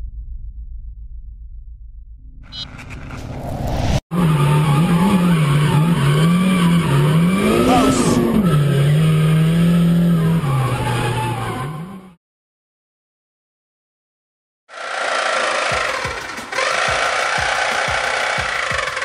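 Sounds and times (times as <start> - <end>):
car engine revving: 4.1 - 12.2, 14.7 - 19.0.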